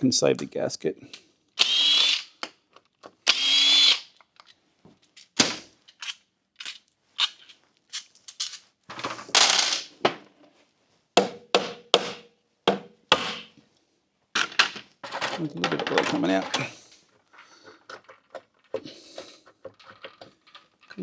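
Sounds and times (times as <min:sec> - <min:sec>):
cordless driver whirring: 0:01.6 - 0:02.3, 0:03.3 - 0:04.1
metal clinks and knocks: 0:06.0 - 0:09.8, 0:14.4 - 0:21.0.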